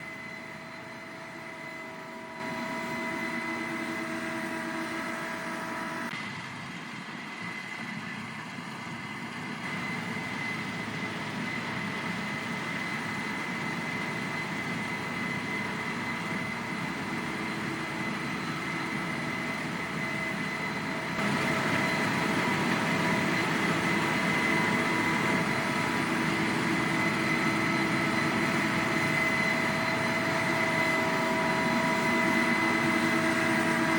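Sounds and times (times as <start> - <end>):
high whine: 0.0 - 6.1, 15.6 - 33.9
combine harvester running: 0.0 - 33.9.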